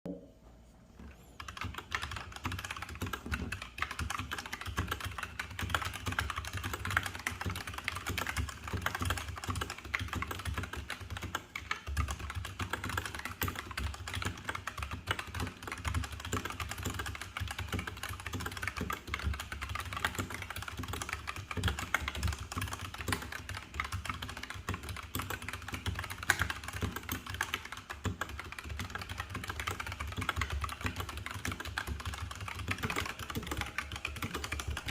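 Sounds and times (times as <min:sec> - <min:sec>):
mechanical keyboard typing: 0:01.4 - 0:34.9.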